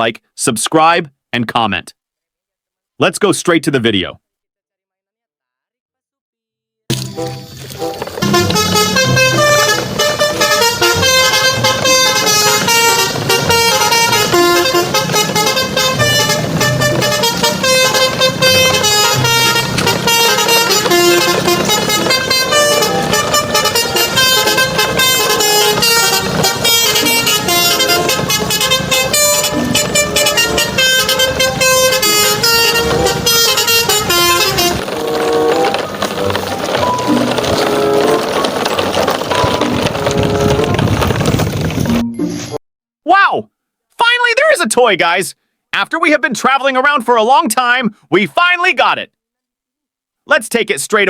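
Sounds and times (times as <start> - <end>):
vehicle engine noise: 6.9 - 42.0
truck horns honking: 7.1 - 41.1.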